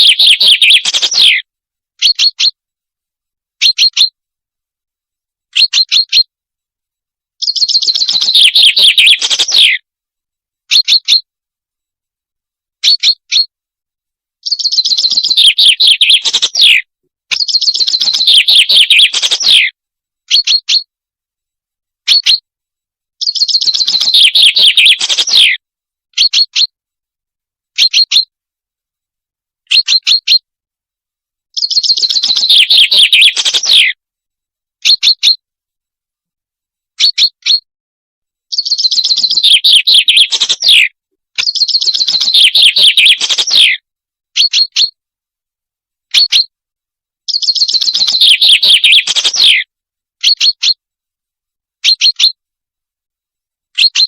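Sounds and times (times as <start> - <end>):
bird chirps: 0.0 - 2.6, 3.6 - 4.2, 5.5 - 6.3, 7.4 - 9.8, 10.7 - 11.3, 12.8 - 13.5, 14.4 - 20.9, 22.0 - 22.4, 23.2 - 25.6, 26.2 - 26.8, 27.8 - 28.3, 29.7 - 30.4, 31.5 - 34.0, 34.8 - 35.4, 37.0 - 37.7, 38.5 - 43.8, 44.4 - 45.0, 46.1 - 46.5, 47.3 - 50.8, 51.8 - 52.4, 53.7 - 54.0.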